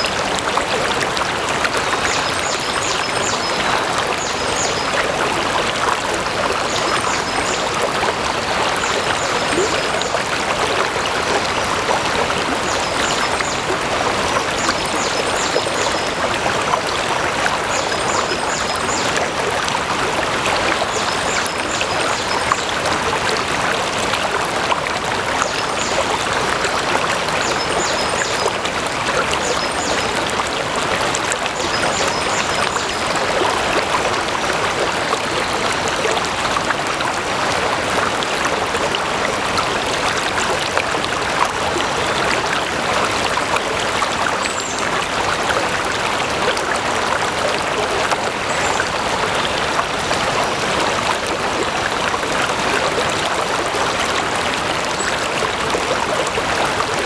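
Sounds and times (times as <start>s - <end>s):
water flowing: 0.0s - 57.0s.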